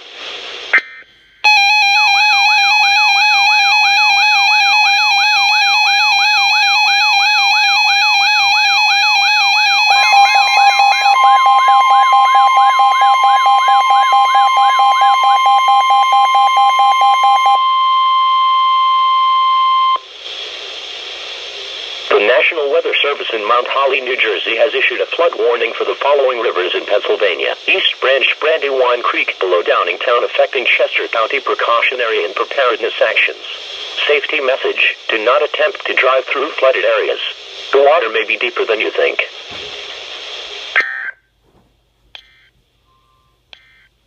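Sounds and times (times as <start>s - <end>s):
faint radio hiss: 0.0s - 1.5s, 20.0s - 44.0s
higher steady tone: 1.5s - 20.0s
warbling siren: 1.5s - 20.0s
steady alert tone: 7.6s - 17.6s.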